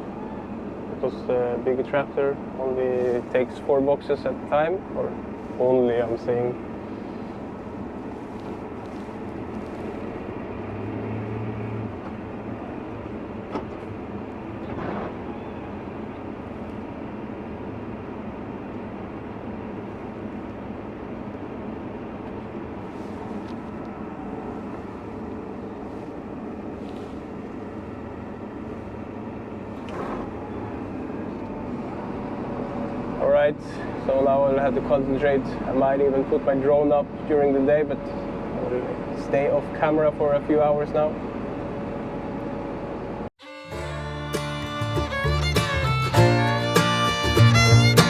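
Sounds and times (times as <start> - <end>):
tractor engine running: 0.0 - 48.0.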